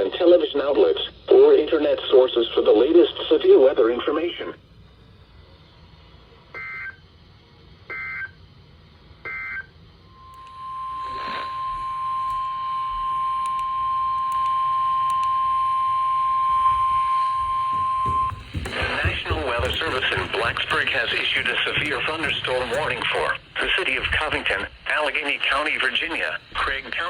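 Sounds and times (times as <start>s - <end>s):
steady single-tone alarm: 6.5s - 7.2s, 7.8s - 24.6s.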